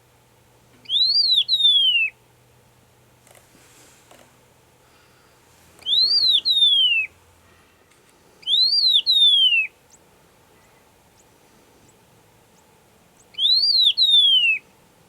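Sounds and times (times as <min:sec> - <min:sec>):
bird whistling song: 0:00.8 - 0:02.2, 0:05.8 - 0:07.1, 0:08.4 - 0:09.8, 0:13.2 - 0:14.7.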